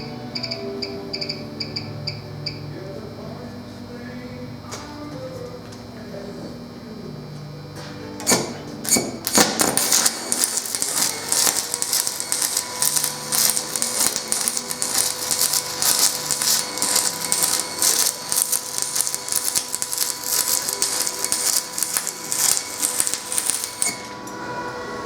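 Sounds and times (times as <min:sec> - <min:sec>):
welding arc crackling: 0:08.2 - 0:24.3.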